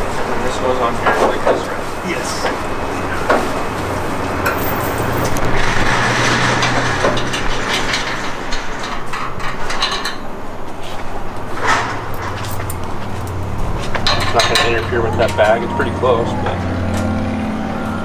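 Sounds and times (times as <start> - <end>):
steady low hum: 0.0 - 18.0
metal parts knocking and clinking: 4.4 - 15.5.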